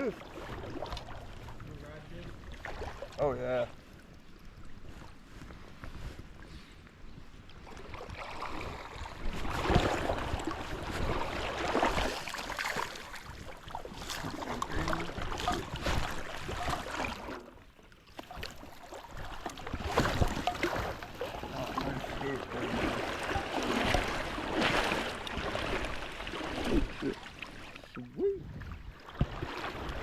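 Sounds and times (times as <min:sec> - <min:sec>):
wind on microphone: 0:08.4 - 0:12.2, 0:19.2 - 0:26.0, 0:28.0 - 0:30.0
creek water rushing: 0:18.2 - 0:28.0.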